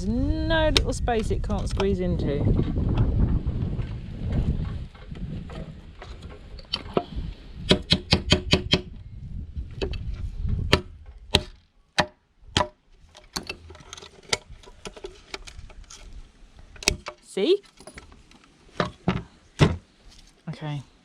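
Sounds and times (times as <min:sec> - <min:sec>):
handling rumble: 0:00.0 - 0:07.7.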